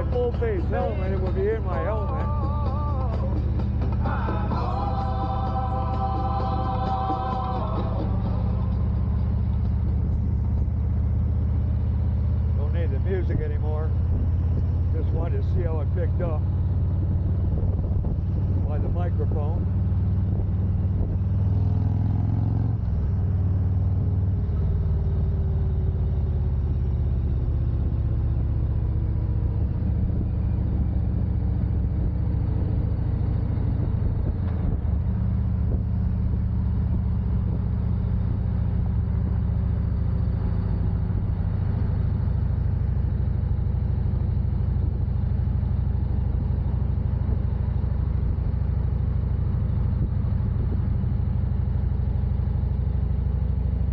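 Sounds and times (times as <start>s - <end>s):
motorcycle engine running: 0.0s - 53.9s
wind rumble on microphone: 12.6s - 22.0s, 26.4s - 42.0s, 49.5s - 51.4s.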